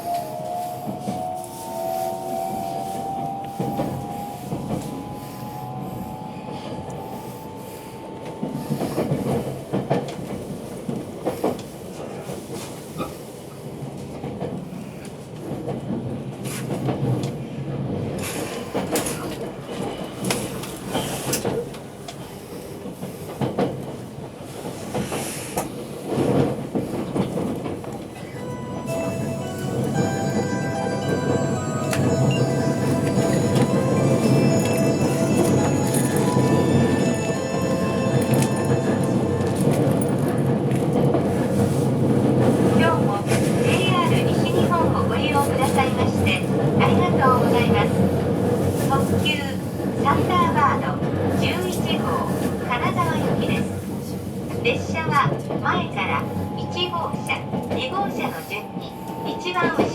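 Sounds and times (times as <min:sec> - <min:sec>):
on-board chime melody: 0:28.4 - 0:40.6.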